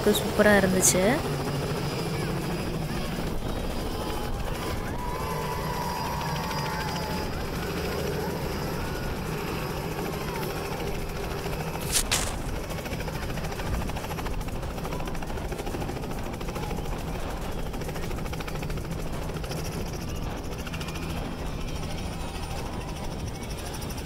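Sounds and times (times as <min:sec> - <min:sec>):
helicopter rotor chopping: 0:00.0 - 0:24.0
sharp cracks: 0:11.8 - 0:12.7.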